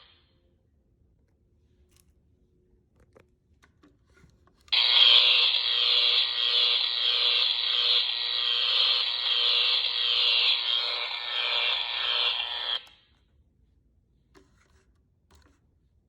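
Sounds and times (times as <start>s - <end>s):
electric buzzing: 4.8s - 13.0s.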